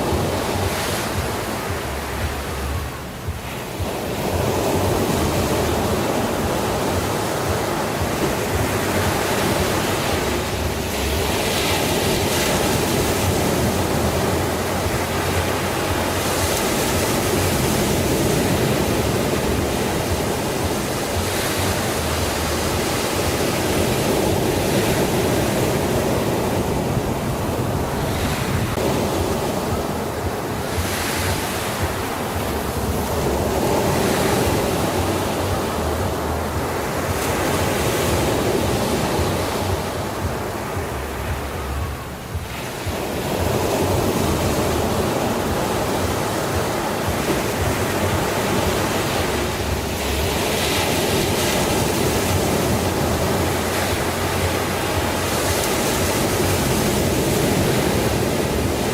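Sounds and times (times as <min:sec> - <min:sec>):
sea waves washing on shore: 0:00.0 - 0:58.9.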